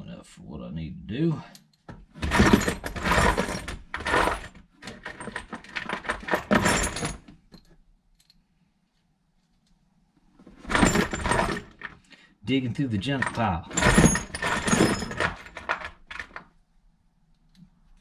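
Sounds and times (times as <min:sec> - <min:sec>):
metal hardware rattling: 0:02.1 - 0:08.3, 0:10.6 - 0:12.0, 0:13.0 - 0:16.5.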